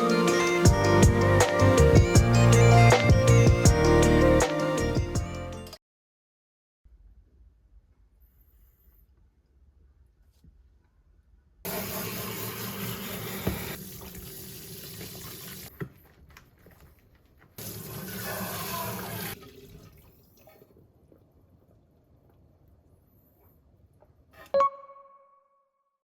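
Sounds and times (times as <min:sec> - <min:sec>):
tap water running into sink: 0:11.7 - 0:15.7, 0:17.6 - 0:20.1.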